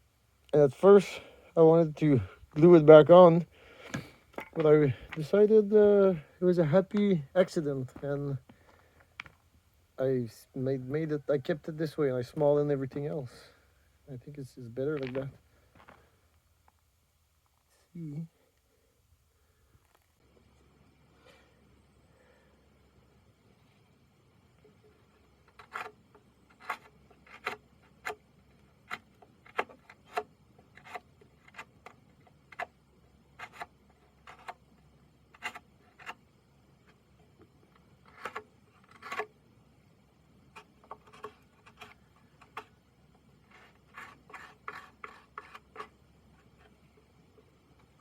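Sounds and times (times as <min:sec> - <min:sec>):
hand tool scraping wood: 0:24.8 - 0:37.0, 0:38.0 - 0:39.4, 0:40.5 - 0:47.1.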